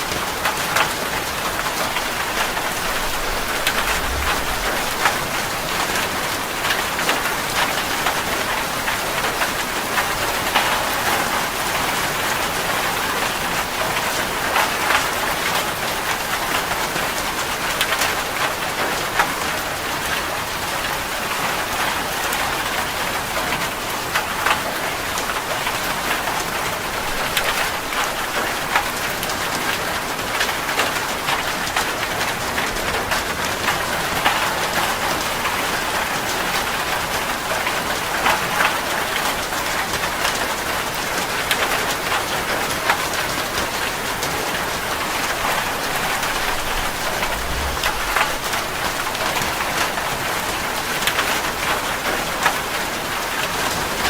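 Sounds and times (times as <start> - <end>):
rain pattering on surfaces: 0.0 - 54.0.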